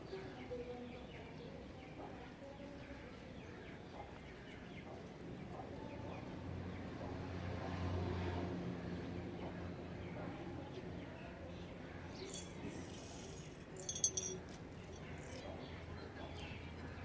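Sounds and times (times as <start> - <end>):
small birds chirping: 9.4 - 17.0.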